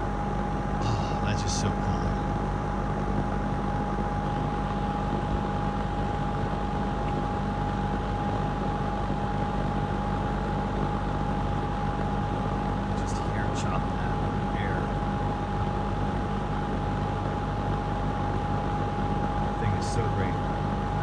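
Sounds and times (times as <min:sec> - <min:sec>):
box fan running: 0:00.0 - 0:21.0.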